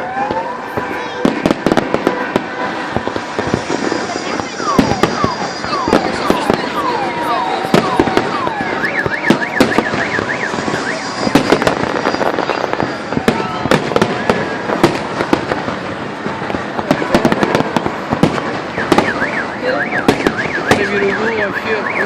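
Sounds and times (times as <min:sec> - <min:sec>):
fireworks bangs and crackles: 0:00.0 - 0:22.0
warbling alarm tone: 0:02.0 - 0:14.8, 0:18.6 - 0:22.0.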